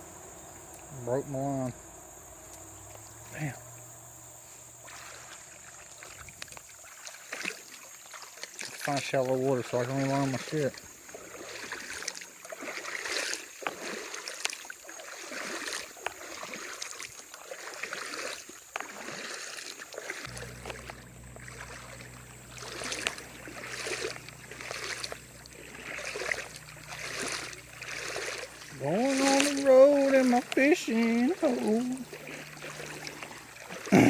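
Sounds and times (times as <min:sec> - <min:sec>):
low steady rumble: 0:00.0 - 0:06.0, 0:20.3 - 0:29.6, 0:31.3 - 0:33.8
wading through shallow water: 0:00.0 - 0:34.0.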